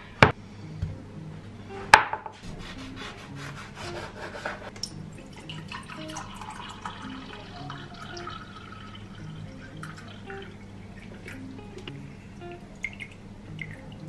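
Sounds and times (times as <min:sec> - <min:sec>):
faint soft music: 0:00.0 - 0:14.0
quick rubbing or scraping strokes: 0:02.4 - 0:04.7.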